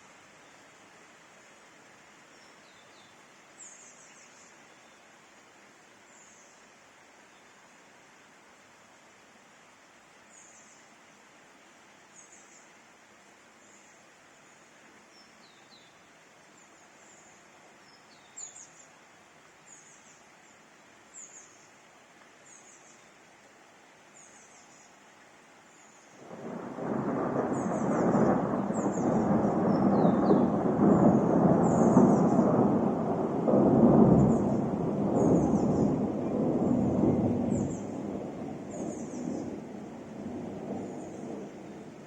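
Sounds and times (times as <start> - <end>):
rain hissing: 25.6 - 42.0
thunder rumbling: 26.2 - 42.0
bird chirping: 26.3 - 33.4, 34.1 - 42.0.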